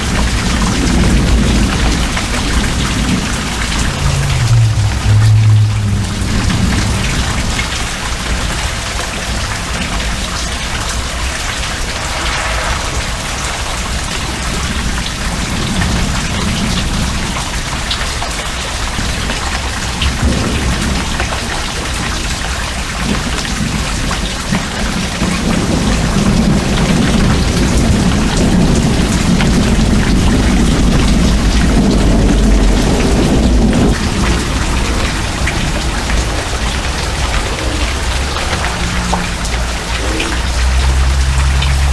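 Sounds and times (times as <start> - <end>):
thunder rumbling: 0.0 - 17.0, 25.2 - 41.9
heavy rain: 0.0 - 41.9.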